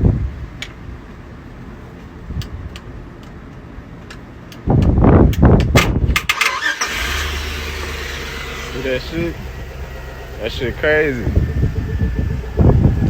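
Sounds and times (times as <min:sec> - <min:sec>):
engine catching: 0:04.8 - 0:13.0
truck starter cranking engine: 0:06.0 - 0:13.0.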